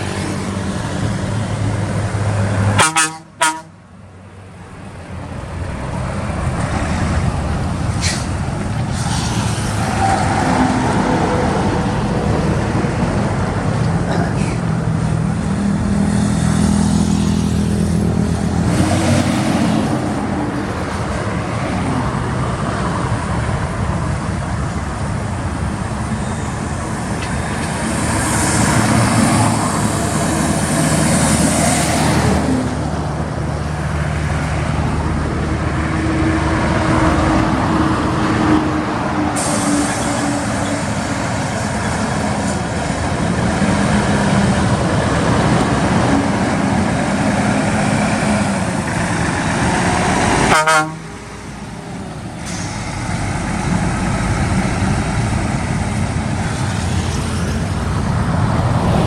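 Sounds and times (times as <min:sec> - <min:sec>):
truck engines running: 0:00.0 - 0:59.0
loud hissing rush: 0:39.2 - 0:50.4.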